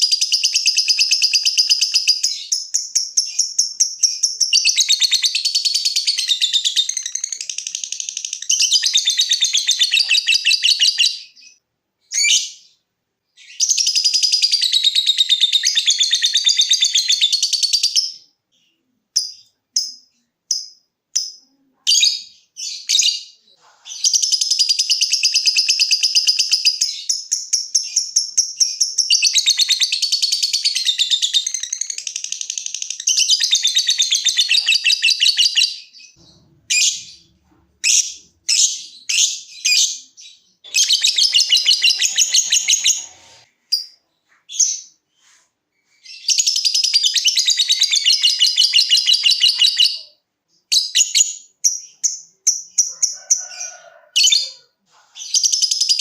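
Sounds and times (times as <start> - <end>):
lovebird chattering trills: 40.7 - 43.4.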